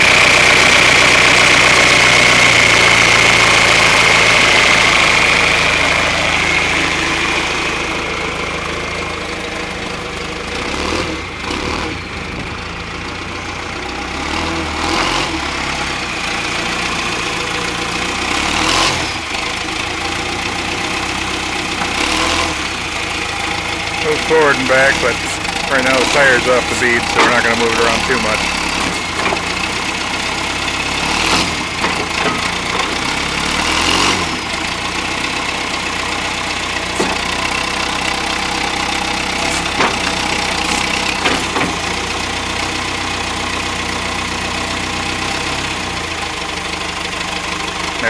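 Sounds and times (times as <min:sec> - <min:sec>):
diesel backhoe engine running: 0:00.0 - 0:48.0
short clunks: 0:21.7 - 0:22.5, 0:24.1 - 0:30.4, 0:31.3 - 0:33.4, 0:36.9 - 0:42.3.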